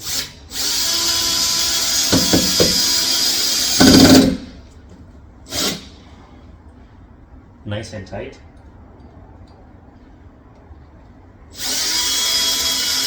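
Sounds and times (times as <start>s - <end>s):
power drill motor whining: 0.0s - 4.5s, 11.6s - 13.0s
knocks: 2.1s - 3.1s, 3.8s - 4.6s.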